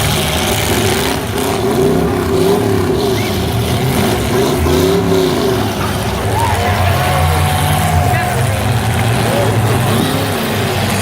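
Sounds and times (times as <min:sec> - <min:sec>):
car engines revving: 0:00.0 - 0:11.0.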